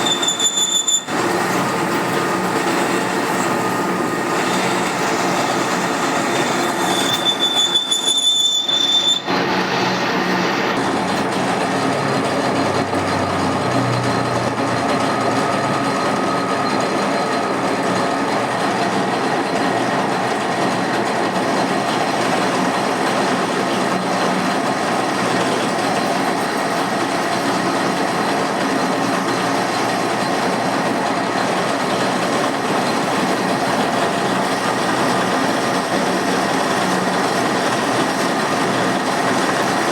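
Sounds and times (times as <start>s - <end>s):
high-pitched squeal: 0.0s - 18.0s
machine tool cutting metal: 0.0s - 39.9s.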